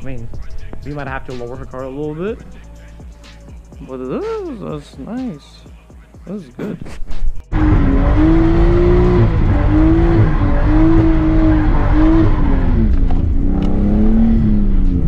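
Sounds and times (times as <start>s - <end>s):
car engine revving high: 7.5s - 15.0s.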